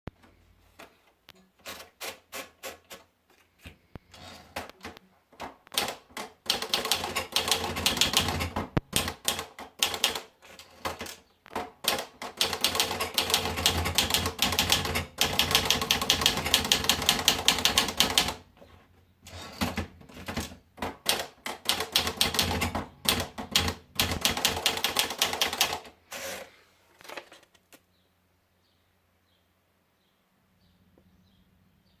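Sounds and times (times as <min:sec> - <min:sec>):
typewriter keystroke clacks: 0:05.6 - 0:18.4, 0:19.6 - 0:25.9.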